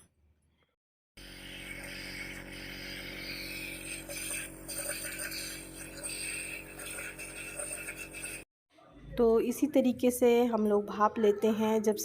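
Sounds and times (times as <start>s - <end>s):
nebulizer motor hum: 1.2s - 8.4s.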